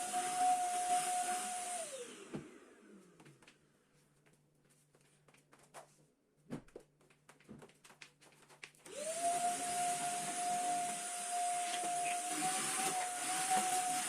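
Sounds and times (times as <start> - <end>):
vacuum cleaner motor whine: 0.0 - 3.2, 8.9 - 14.0.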